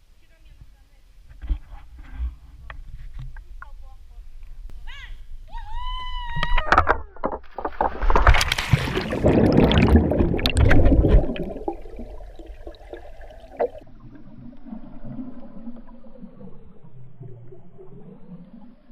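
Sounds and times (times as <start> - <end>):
splashing and rushing water: 7.2 - 16.3
underwater gurgling and bubbling: 7.6 - 18.9.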